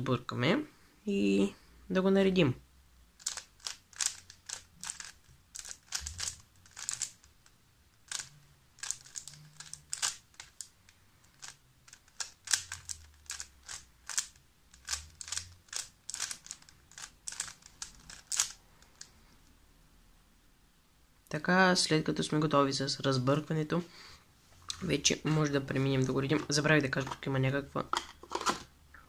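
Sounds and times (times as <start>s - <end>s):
puzzle cube plastic clicks: 3.2s - 10.7s, 11.3s - 19.1s.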